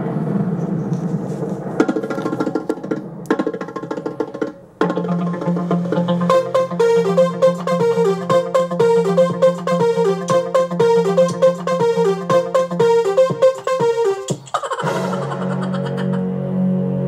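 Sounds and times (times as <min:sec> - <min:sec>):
fast synthesizer keyboard notes: 0:04.8 - 0:17.0.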